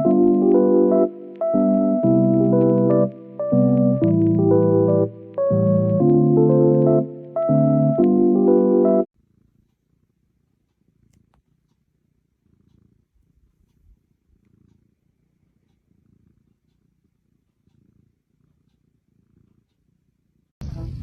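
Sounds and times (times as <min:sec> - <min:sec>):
cat purring: 0:09.2 - 0:20.5.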